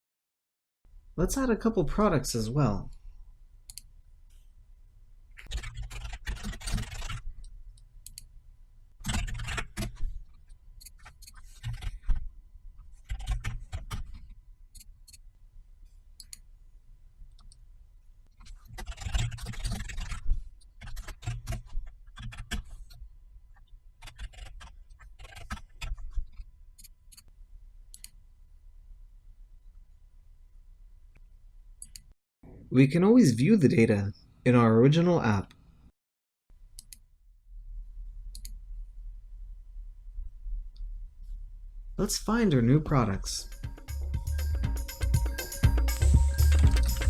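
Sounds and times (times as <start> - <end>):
typing on computer keyboard: 5.4 - 7.2, 20.8 - 22.6.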